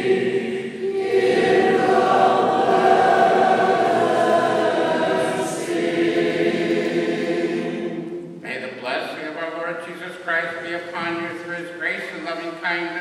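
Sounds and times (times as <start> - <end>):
choir singing chant: 0.0 - 8.4.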